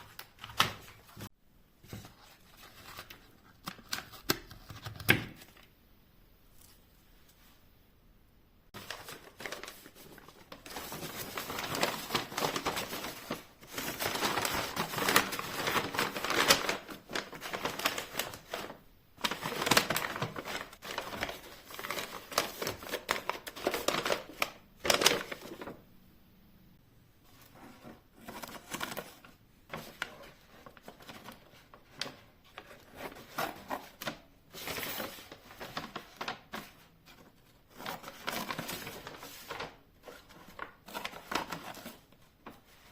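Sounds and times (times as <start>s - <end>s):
crinkling and rustling: 8.7s - 25.8s, 27.2s - 42.9s.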